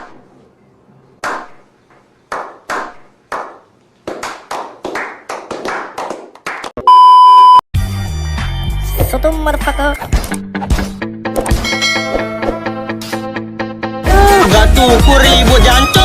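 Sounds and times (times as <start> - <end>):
hand claps: 2.3 - 6.8
steady beep tone: 6.9 - 7.6.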